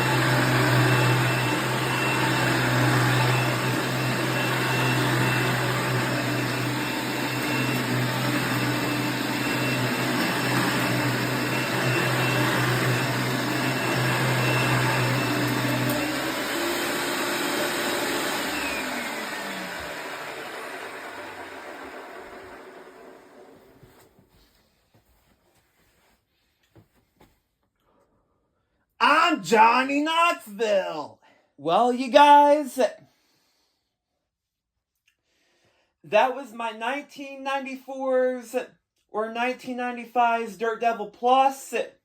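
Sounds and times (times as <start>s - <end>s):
motor winding down whine: 0.0s - 23.6s
vacuum cleaner running: 0.0s - 24.1s.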